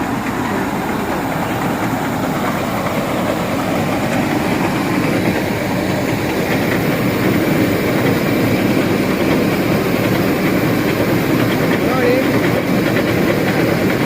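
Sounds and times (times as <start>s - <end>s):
combine harvester running: 0.0s - 14.0s.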